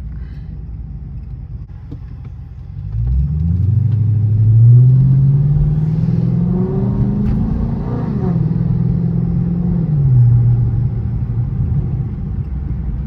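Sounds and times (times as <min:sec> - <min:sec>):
car engine accelerating hard: 0:02.7 - 0:13.0.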